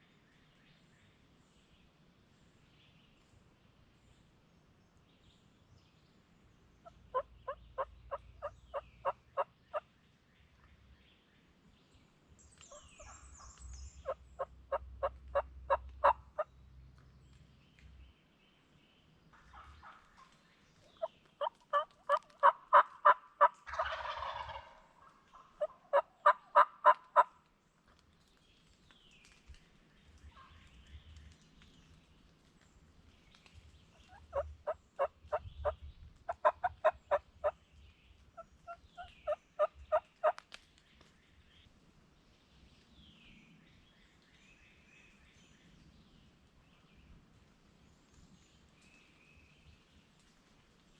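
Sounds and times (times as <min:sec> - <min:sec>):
faint songbird chirps: 0:00.0 - 0:21.9, 0:28.3 - 0:50.3
turkey gobble: 0:06.8 - 0:09.8, 0:12.7 - 0:16.5, 0:19.4 - 0:20.3, 0:20.9 - 0:27.3, 0:33.9 - 0:37.6, 0:38.4 - 0:40.4
turkey yelps: 0:12.7 - 0:16.5, 0:21.0 - 0:27.3, 0:34.0 - 0:37.6.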